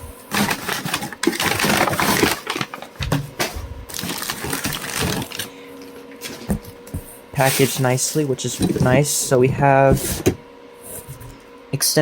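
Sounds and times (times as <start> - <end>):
packing material crinkling: 0.3 - 5.6.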